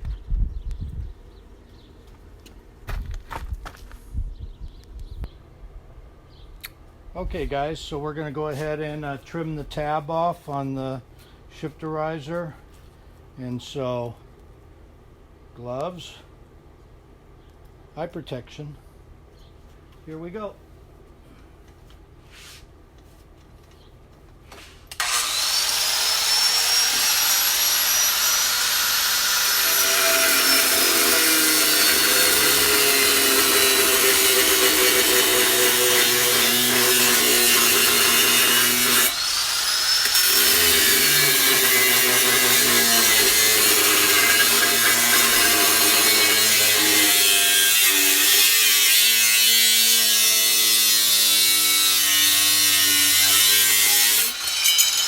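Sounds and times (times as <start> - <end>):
power tool cutting metal: 25.0 - 55.0.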